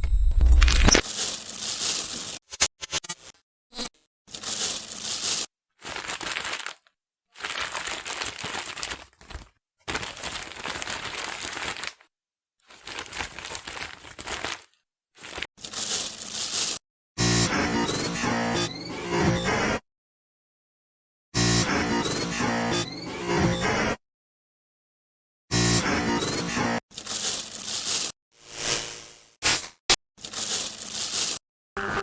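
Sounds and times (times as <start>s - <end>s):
harsh static noise bursts: 0.0s - 1.0s.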